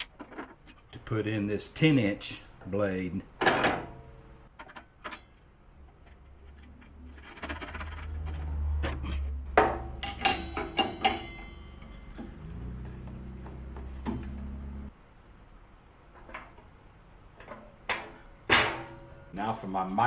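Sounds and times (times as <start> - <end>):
metallic clinks and clanks: 4.6 - 13.1.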